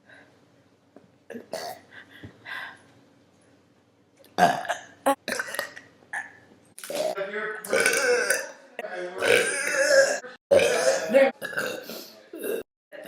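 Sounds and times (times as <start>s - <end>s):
girl burping: 4.4s - 6.4s, 7.8s - 8.6s, 9.2s - 11.8s.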